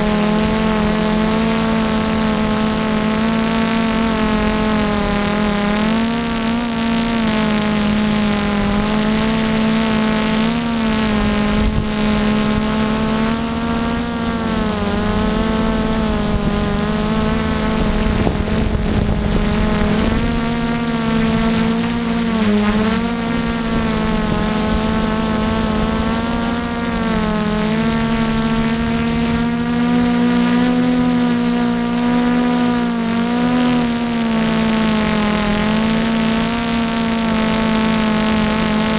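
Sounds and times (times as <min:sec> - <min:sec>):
multicopter motors buzzing whine: 0:00.0 - 0:38.9
low rumble of wind: 0:10.8 - 0:31.4.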